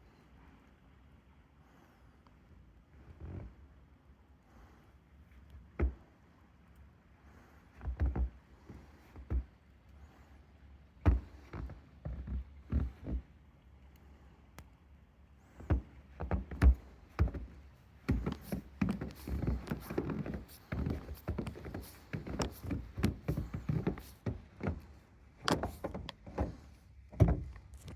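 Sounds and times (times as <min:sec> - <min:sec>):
irregular knocks and thumps: 0:15.7 - 0:27.6.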